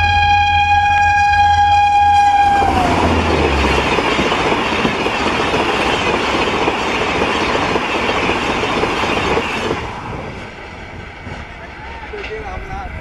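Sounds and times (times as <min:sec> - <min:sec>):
train horn: 0:00.0 - 0:03.9
train wheels clattering at speed: 0:02.5 - 0:13.0.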